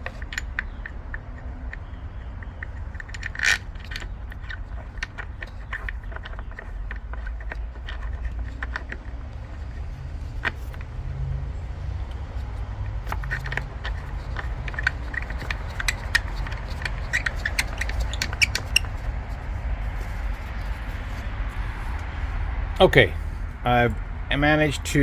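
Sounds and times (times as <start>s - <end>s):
metallic clicks and scrapes of bolts: 0.0s - 22.4s
steady low rumble: 6.0s - 24.9s.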